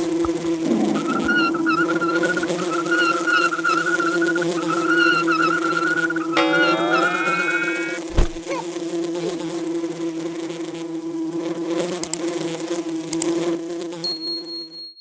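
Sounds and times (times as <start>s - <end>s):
bee wings buzzing: 0.9s - 8.0s.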